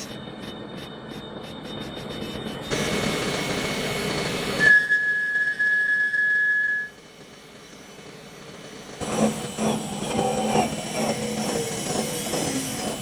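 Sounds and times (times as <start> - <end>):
high-pitched lathe squeal: 0.0 - 7.1
lathe cutting metal: 1.4 - 5.2, 7.0 - 13.0.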